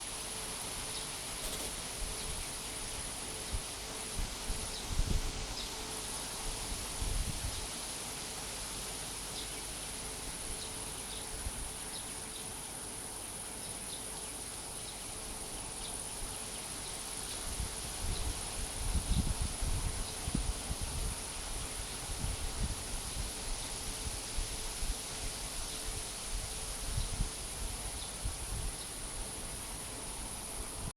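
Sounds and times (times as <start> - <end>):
insects droning: 0.0 - 30.9
wind through leaves: 0.0 - 30.9
wind gusting on microphone: 1.4 - 5.6, 6.5 - 7.7, 17.4 - 30.9.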